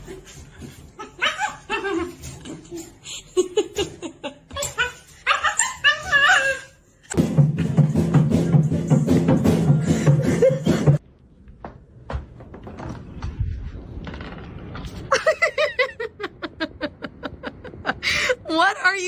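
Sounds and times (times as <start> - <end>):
background music with a beat: 7.2 - 11.0
person laughing rapidly: 9.8 - 11.0.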